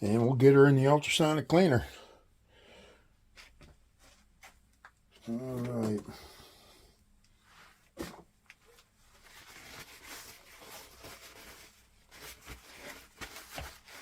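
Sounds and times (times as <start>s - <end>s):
soft rustling: 3.3s - 6.2s, 7.3s - 14.0s.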